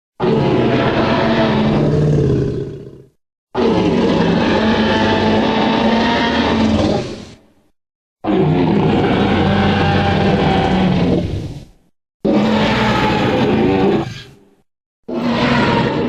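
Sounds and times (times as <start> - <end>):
dinosaur roar: 0.2 - 7.4, 8.2 - 14.4, 15.1 - 16.0.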